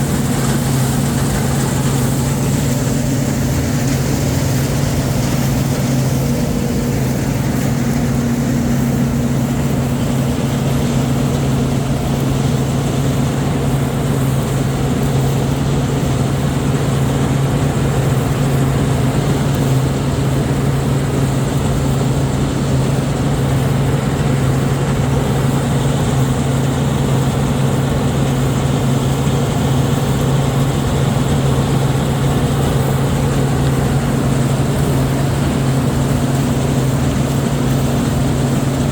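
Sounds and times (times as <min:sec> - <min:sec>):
heavy machinery engine drone: 0:00.0 - 0:38.9.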